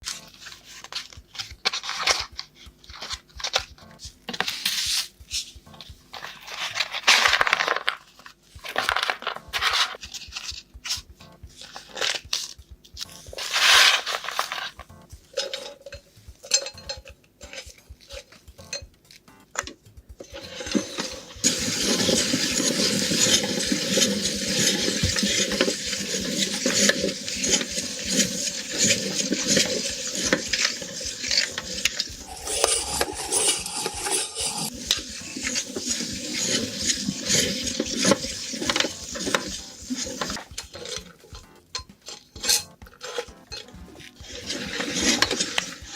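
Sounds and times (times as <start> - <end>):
meat grinder clattering: 20.4 - 32.0.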